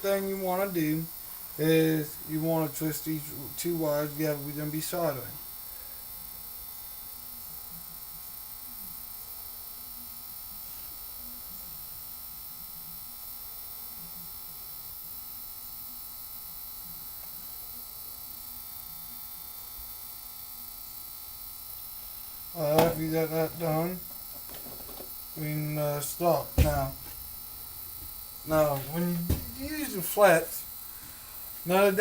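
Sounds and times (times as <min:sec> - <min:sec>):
electrical hum: 0:00.0 - 0:32.0
thin high whine: 0:22.6 - 0:32.0.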